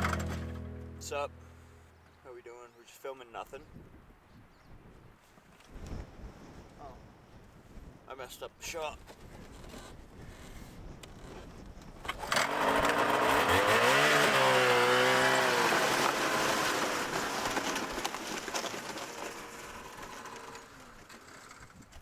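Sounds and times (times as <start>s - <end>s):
vehicle engine starting and driving off: 0.0s - 1.4s, 12.1s - 21.5s.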